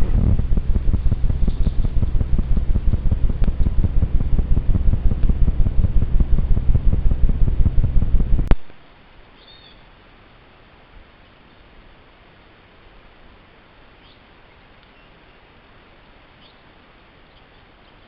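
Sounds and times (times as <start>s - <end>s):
wind buffeting microphone: 0.0s - 8.6s
faint steady hiss: 0.0s - 18.0s.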